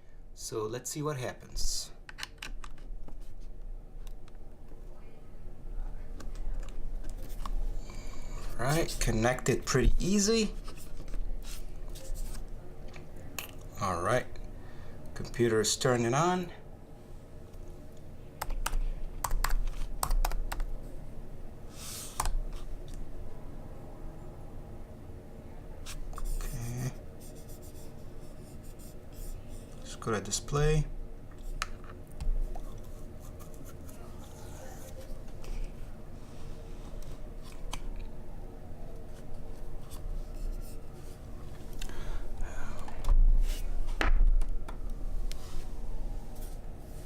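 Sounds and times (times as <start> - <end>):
steady low hum: 0.0 - 47.0
laptop keyboard clicking: 18.4 - 20.7.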